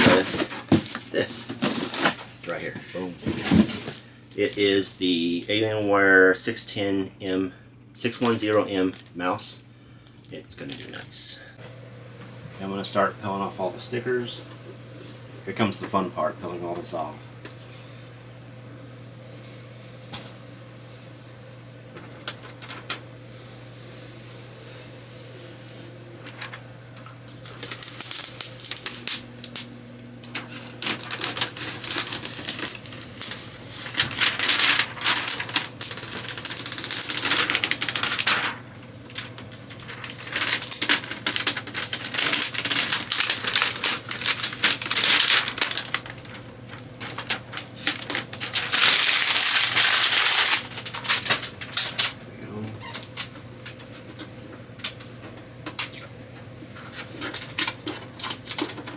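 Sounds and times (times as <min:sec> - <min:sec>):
plastic film crackling and ripping: 0:00.0 - 0:05.4, 0:10.6 - 0:11.0, 0:27.4 - 0:29.7, 0:30.3 - 0:52.2.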